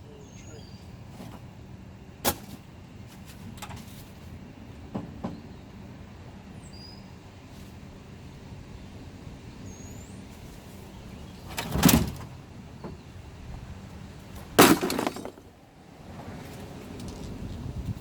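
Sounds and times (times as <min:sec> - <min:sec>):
clattering crashes: 0:14.6 - 0:15.5.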